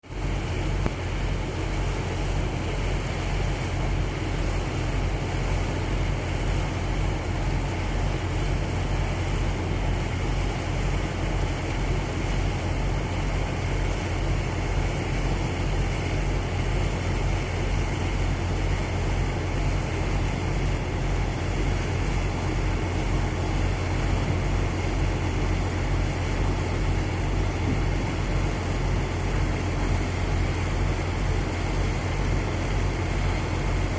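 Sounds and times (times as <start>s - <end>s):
boat engine droning: 0.0s - 33.9s
broad rushing noise: 9.1s - 33.9s.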